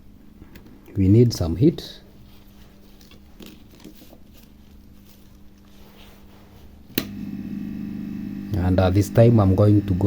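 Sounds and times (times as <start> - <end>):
steady low hum: 6.9 - 10.0.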